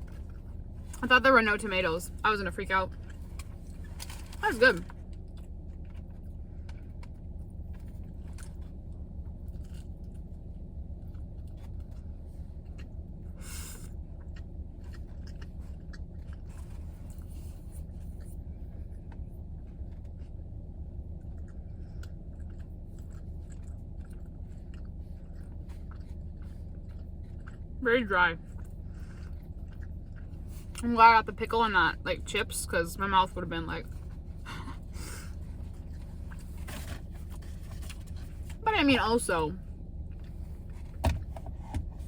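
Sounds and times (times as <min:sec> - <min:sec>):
low car cabin hum: 0:00.0 - 0:42.0
chewing and biting sandwich: 0:02.9 - 0:27.8, 0:28.4 - 0:30.8, 0:33.8 - 0:38.6, 0:39.6 - 0:42.0
crunch: 0:02.9 - 0:27.8, 0:28.4 - 0:30.8.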